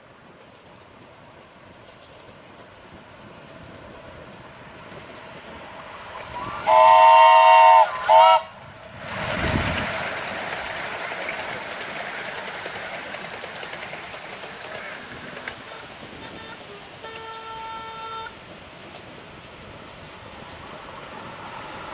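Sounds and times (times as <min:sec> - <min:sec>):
train running by: 0:00.0 - 0:21.9
locomotive whistle blasts: 0:06.2 - 0:08.6, 0:15.7 - 0:18.4.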